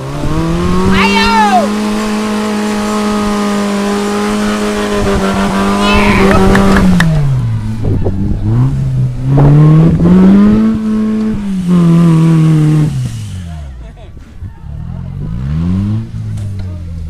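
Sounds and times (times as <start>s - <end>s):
off-road vehicle engine revving: 0.0s - 17.0s.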